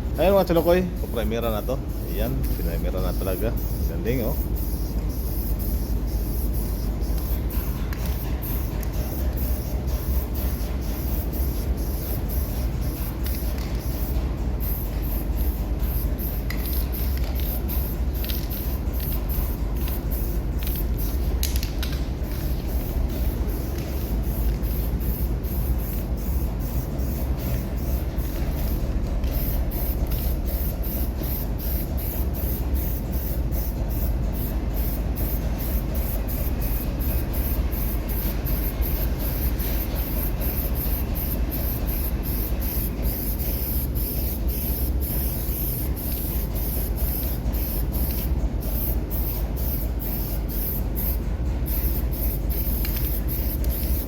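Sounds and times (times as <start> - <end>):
paint spray gun hissing: 0.2 - 54.0.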